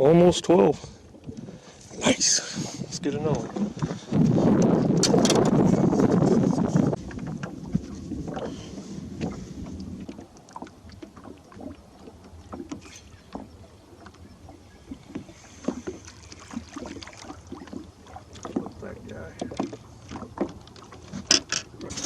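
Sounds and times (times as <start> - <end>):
water lapping against boat: 0.0 - 22.0
knocks and clicks from gear: 4.6 - 5.6.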